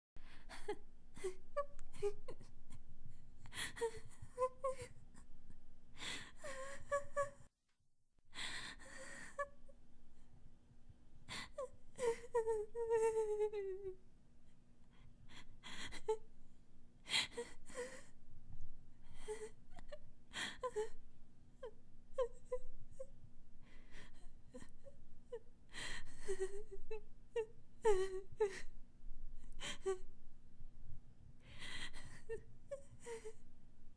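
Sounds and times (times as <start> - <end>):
girl crying: 6.4 - 7.4, 11.5 - 14.0.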